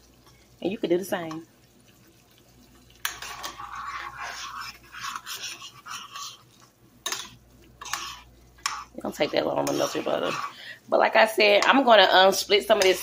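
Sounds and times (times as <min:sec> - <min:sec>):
spoon scraping in pot: 0:02.7 - 0:10.6, 0:11.4 - 0:13.0.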